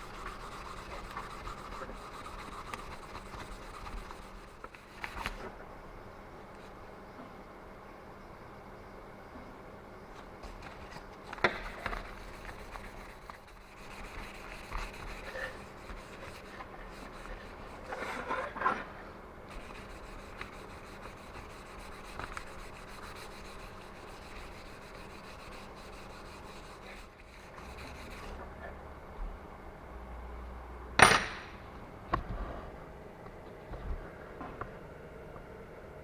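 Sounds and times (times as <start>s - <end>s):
rubbing and scraping on engine parts: 0.0s - 5.4s, 10.4s - 28.4s.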